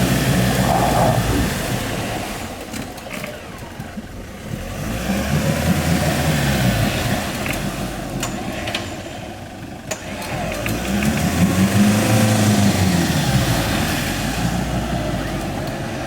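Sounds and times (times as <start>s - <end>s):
car engine revving: 0.0s - 2.6s.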